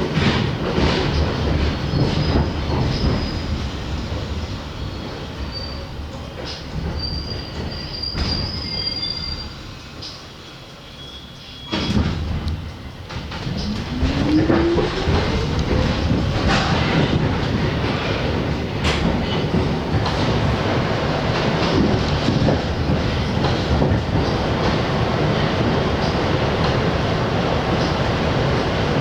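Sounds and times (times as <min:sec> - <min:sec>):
train rumbling: 0:00.0 - 0:29.0
subway train motor whine: 0:10.0 - 0:17.8
wheels clacking over rail joints: 0:11.7 - 0:29.0.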